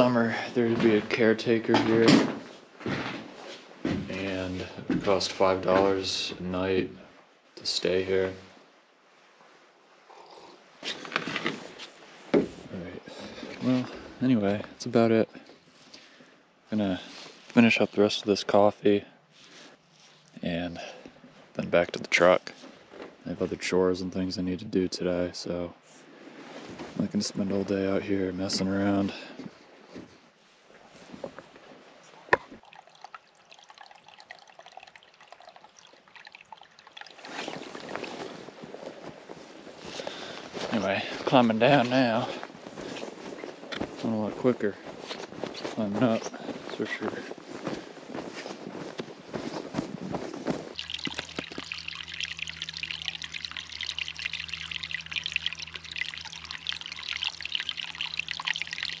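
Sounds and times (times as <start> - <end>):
low steady hum: 30.8 - 59.0
liquid trickling: 31.0 - 59.0.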